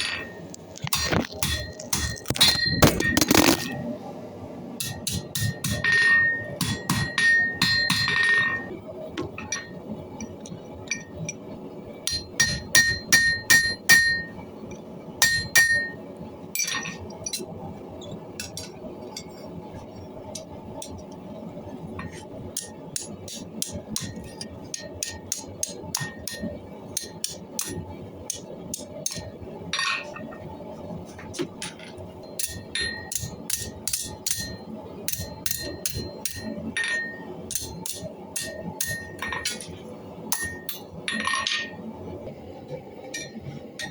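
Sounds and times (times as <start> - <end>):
hammer striking anvil: 4.8 - 8.7, 12.1 - 14.3, 15.2 - 16.0, 22.0 - 30.1, 32.4 - 39.7, 40.3 - 41.8.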